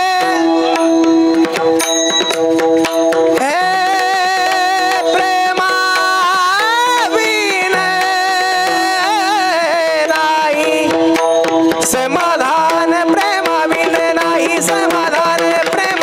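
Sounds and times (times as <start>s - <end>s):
person singing high devotional note: 0.0s - 1.7s.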